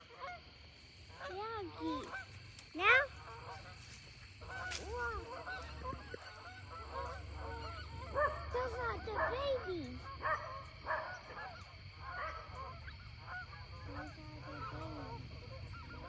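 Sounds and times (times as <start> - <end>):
geese honking: 0.0 - 16.0.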